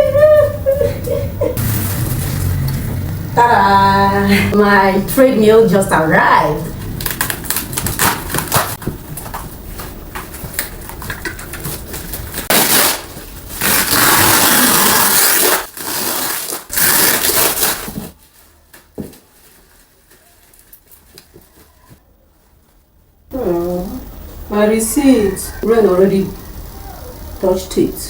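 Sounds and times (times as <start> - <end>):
packaging scraping and rubbing: 1.6 - 3.0, 6.8 - 21.9.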